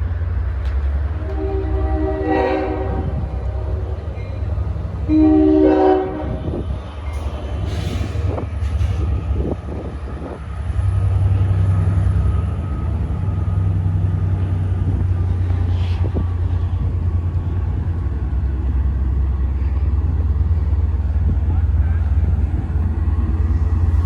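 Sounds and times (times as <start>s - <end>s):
train rumbling: 0.0s - 24.0s
train chord horn blast: 1.2s - 4.0s, 5.0s - 6.6s.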